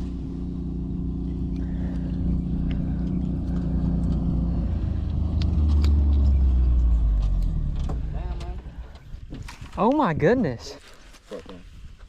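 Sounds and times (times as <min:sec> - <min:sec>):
low motor drone: 0:00.0 - 0:09.2.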